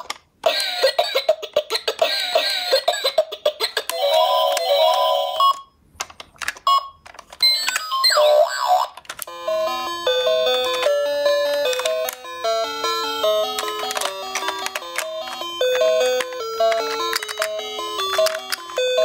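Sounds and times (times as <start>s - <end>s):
toy electronic siren wailing: 7.4s - 9.0s
clicks: 13.5s - 18.8s.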